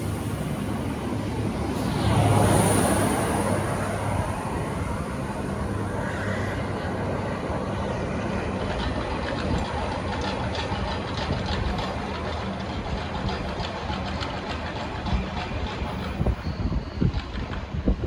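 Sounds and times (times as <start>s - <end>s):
diesel railcar passing: 0.0s - 18.0s.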